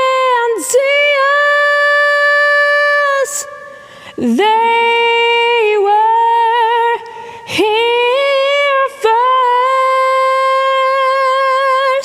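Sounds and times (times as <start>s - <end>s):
woman singing through vocal harmonizer: 0.0s - 12.0s
audible breath: 3.7s - 4.2s, 7.0s - 7.6s.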